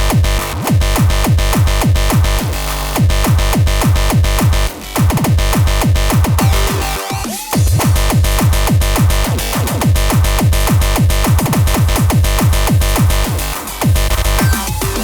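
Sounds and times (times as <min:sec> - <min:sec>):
techno kick drum: 0:00.0 - 0:15.0
synthesizer layers: 0:06.4 - 0:09.8, 0:11.6 - 0:15.0.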